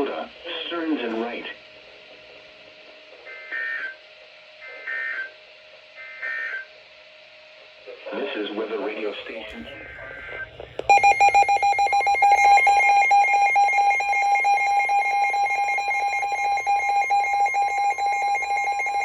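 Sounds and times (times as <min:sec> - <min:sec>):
steady single-pitch warning tone: 0:10.8 - 0:19.0
electronic warbling alarm: 0:10.9 - 0:19.0.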